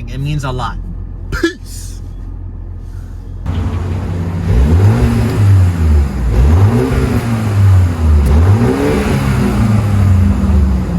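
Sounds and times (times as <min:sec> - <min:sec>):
car engine revving: 0:03.5 - 0:10.9.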